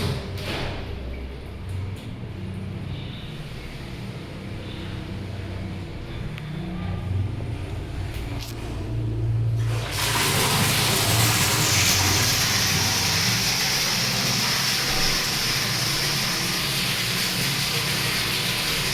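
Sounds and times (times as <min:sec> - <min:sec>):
water running from taps: 0:09.6 - 0:18.9.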